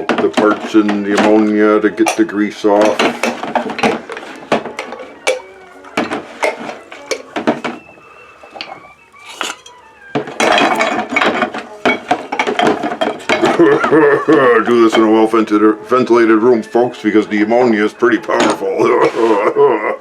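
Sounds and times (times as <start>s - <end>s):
metallic ring: 9.2s - 9.9s
metal parts clinking and knocking: 9.2s - 11.3s.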